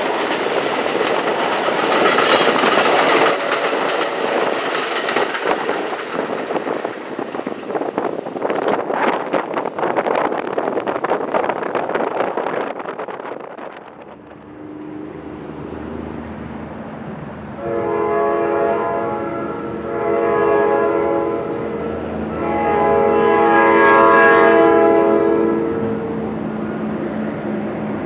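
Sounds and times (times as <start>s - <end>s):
train air horn blasts: 17.6s - 26.3s.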